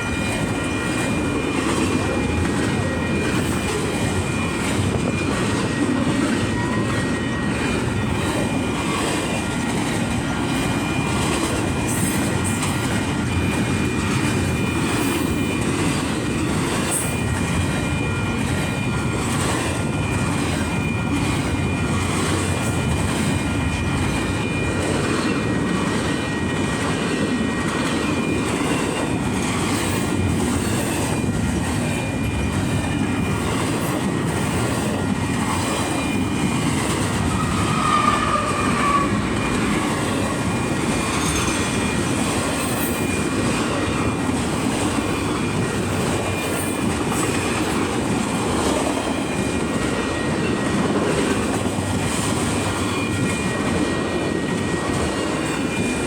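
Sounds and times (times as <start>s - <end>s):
train wheels rumbling on rail: 0.0s - 56.0s
high wheel squeal: 35.3s - 47.6s.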